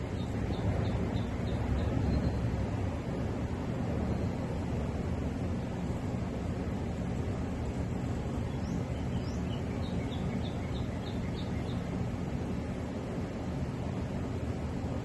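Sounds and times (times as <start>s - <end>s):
small bird chirping: 8.5s - 11.9s.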